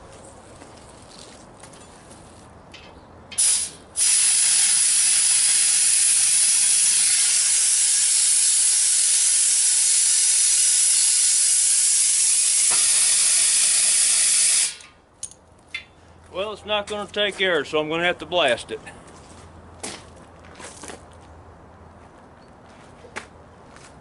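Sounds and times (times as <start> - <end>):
compressed air hissing into tire: 3.4 - 14.9.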